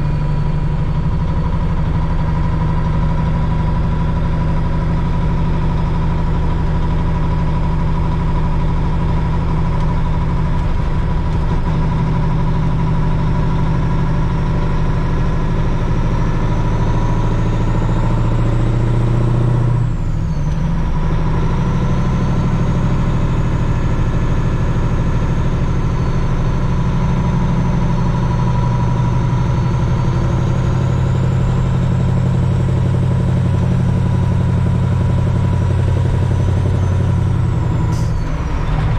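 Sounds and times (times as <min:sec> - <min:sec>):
truck engine idling: 0:00.0 - 0:38.9.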